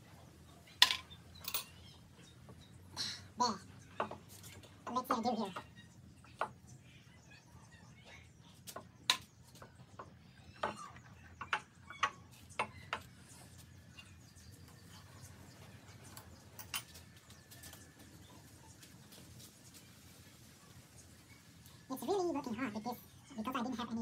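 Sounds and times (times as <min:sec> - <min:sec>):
metal parts clicking and knocking: 0:00.8 - 0:01.8.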